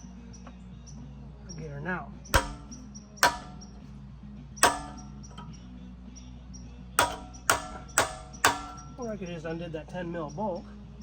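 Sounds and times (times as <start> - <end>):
hammer blows on metal: 2.4 - 3.9, 4.6 - 5.5, 7.0 - 9.1.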